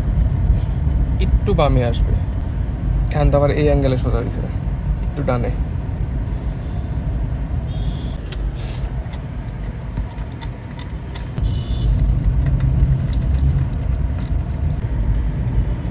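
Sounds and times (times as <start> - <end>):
car engine running: 8.2 - 15.9.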